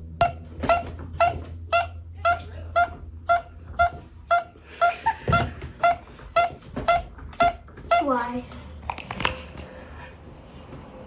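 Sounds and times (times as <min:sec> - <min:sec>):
dog whimpering: 0:00.2 - 0:08.4.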